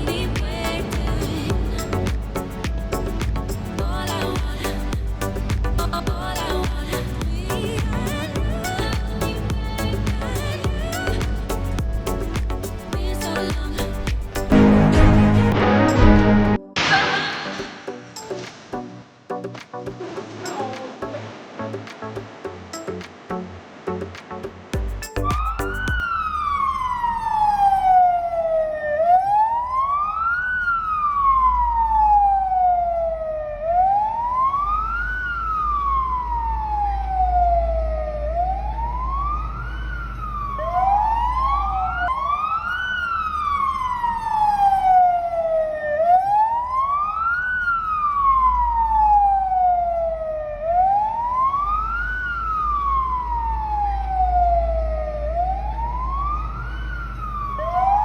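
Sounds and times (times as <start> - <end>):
low rumble: 0.0 - 16.6
emergency vehicle siren wailing: 25.2 - 58.0
faint second siren: 25.2 - 58.0.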